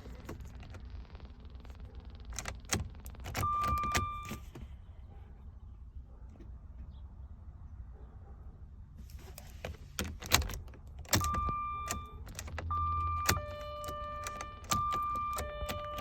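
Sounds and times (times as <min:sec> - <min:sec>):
keys jangling and clicking: 0:09.4 - 0:16.0
electronic warning tones: 0:11.2 - 0:16.0.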